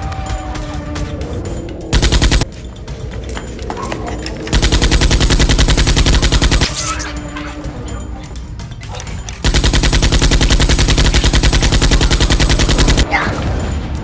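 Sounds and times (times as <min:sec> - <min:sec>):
automatic gunfire: 0:02.0 - 0:02.5, 0:04.3 - 0:07.0, 0:08.8 - 0:13.7.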